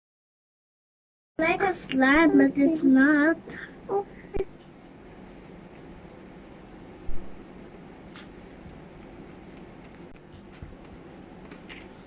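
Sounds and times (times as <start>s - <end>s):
short crackles: 6.9s - 12.0s.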